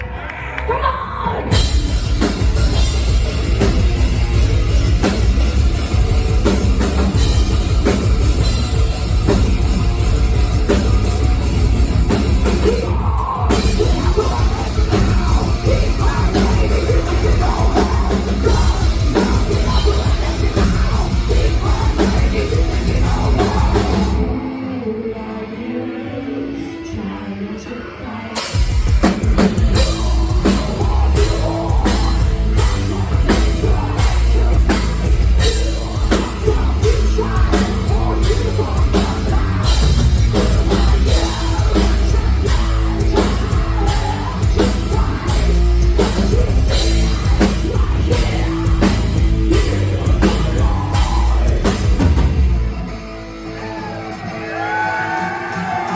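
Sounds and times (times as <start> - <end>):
heavy metal band playing live: 0.8 - 55.9
person singing: 11.9 - 52.4.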